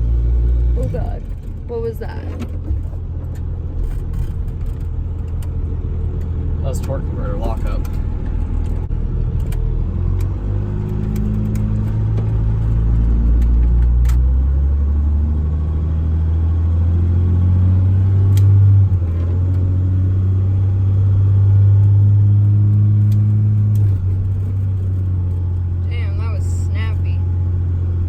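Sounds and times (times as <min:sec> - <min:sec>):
diesel truck engine accelerating: 0:00.0 - 0:28.0
gear shift: 0:00.5 - 0:14.4, 0:18.2 - 0:19.8, 0:21.7 - 0:27.0.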